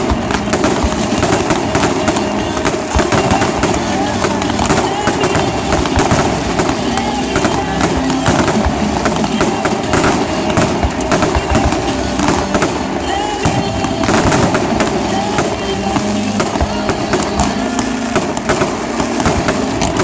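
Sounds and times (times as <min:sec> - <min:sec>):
fireworks bangs and crackles: 0:00.0 - 0:20.0
voices: 0:00.0 - 0:20.0.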